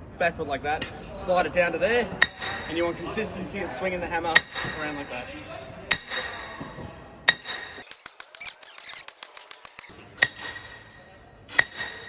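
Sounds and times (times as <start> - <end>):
sharp clicks: 7.8 - 9.9
sledgehammer clanging on metal peg: 7.8 - 9.9.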